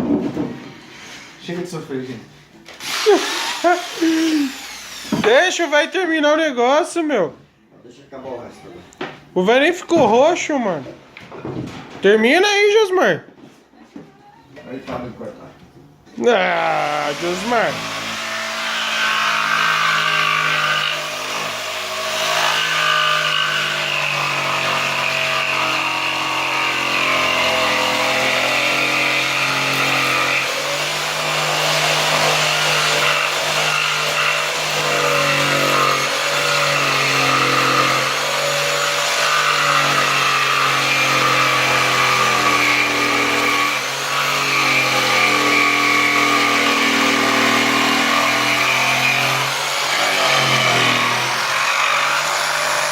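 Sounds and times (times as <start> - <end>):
electric jigsaw cutting wood: 2.7 - 6.4, 16.2 - 52.9.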